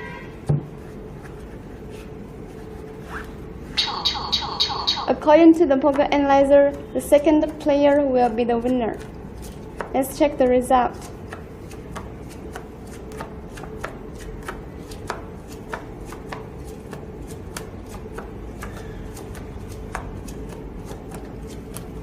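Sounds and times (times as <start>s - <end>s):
playing cards snapping and tapping: 11.0s - 22.0s.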